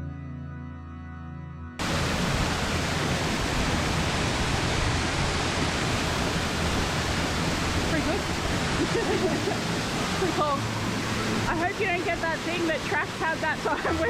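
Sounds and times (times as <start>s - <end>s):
soft ambient music: 0.0s - 14.0s
waterfall rushing: 1.8s - 14.0s.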